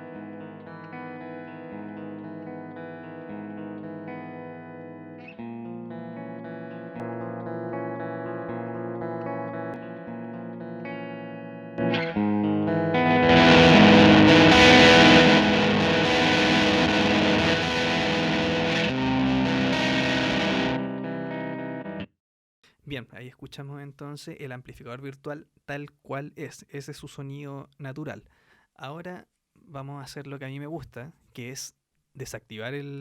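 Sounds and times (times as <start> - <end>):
electric guitar chords: 0.0 - 22.1.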